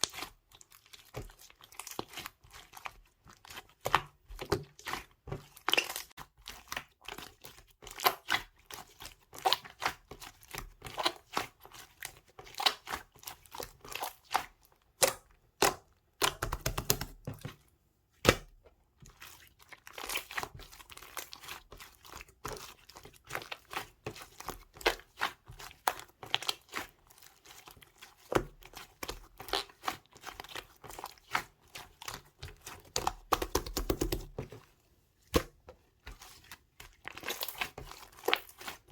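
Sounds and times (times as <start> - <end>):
slime squished by hand: 35.2 - 38.9.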